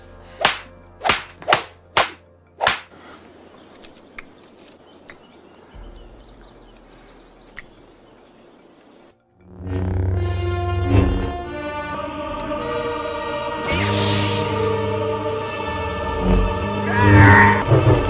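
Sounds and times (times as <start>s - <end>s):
sharp cracks: 0.4s - 3.0s
faint clicks: 7.5s - 7.8s.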